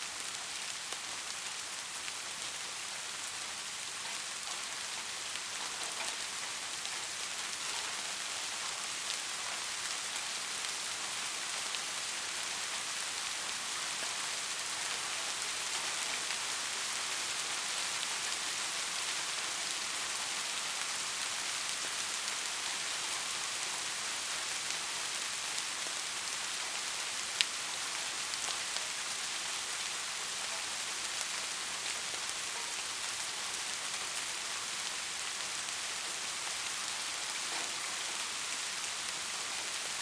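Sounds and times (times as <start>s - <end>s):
steady rain hiss: 0.0s - 40.0s
raindrop ticks: 3.8s - 11.8s, 37.2s - 39.8s.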